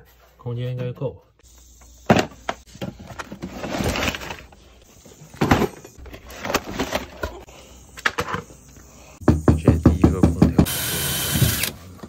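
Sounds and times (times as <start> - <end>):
rustling scrape: 3.2 - 4.6.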